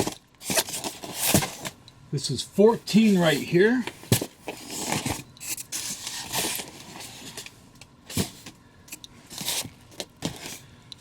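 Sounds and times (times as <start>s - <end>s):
packaging scraping and rustling: 0.0s - 1.8s, 3.0s - 8.6s, 9.2s - 10.7s.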